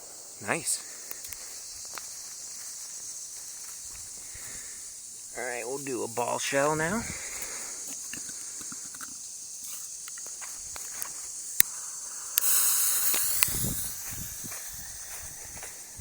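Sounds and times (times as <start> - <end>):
firework hiss: 0.0 - 16.0
firework pop: 12.4 - 14.7.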